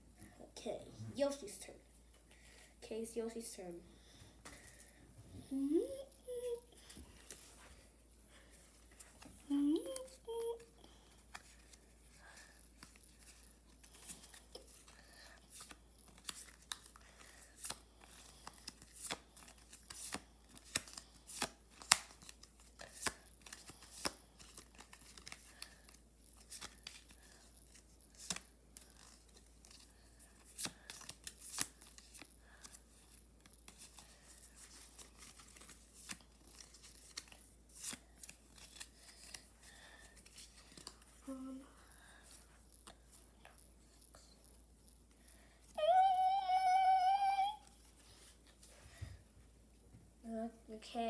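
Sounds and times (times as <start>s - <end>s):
playing cards snapping and rustling: 12.7s - 41.2s.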